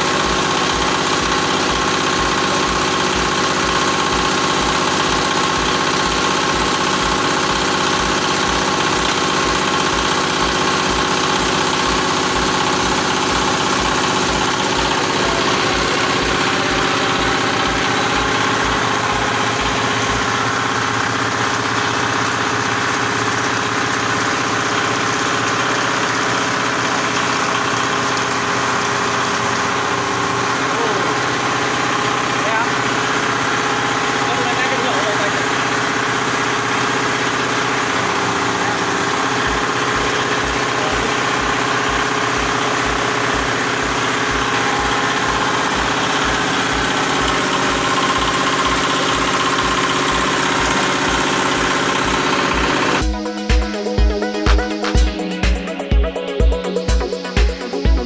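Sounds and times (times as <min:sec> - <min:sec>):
diesel engine running: 0:00.0 - 0:58.0
low pulsing: 0:09.4 - 0:23.6.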